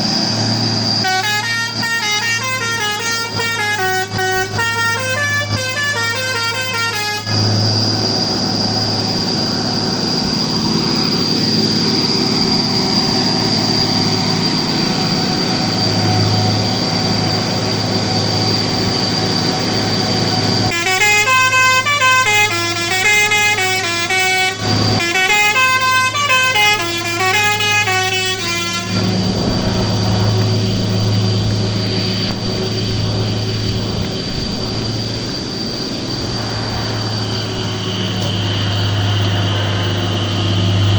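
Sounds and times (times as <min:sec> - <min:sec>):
truck engine under load: 0:00.0 - 0:40.9
musical truck horn: 0:00.9 - 0:09.3, 0:10.8 - 0:33.5.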